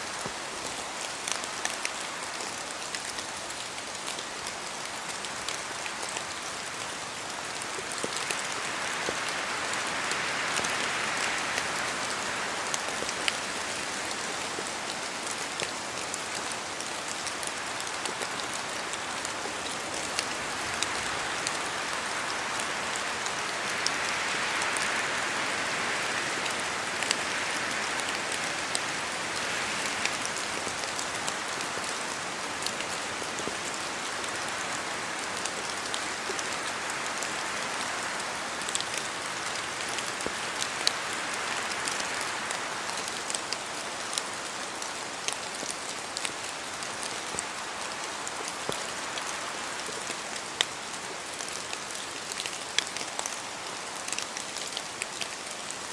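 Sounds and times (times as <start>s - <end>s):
rain pattering in forest: 0.0s - 55.9s.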